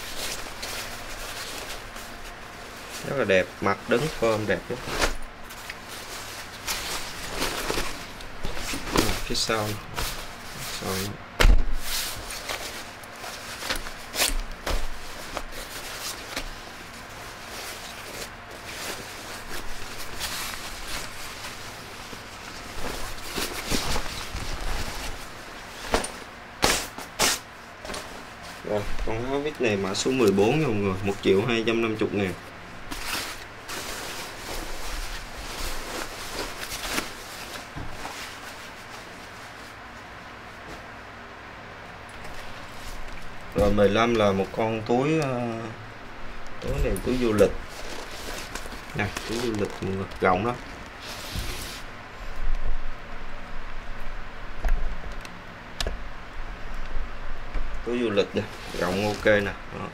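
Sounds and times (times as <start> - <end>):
jacket fabric rustling: 0.0 - 11.1, 11.7 - 41.0, 46.6 - 52.4, 57.9 - 59.5.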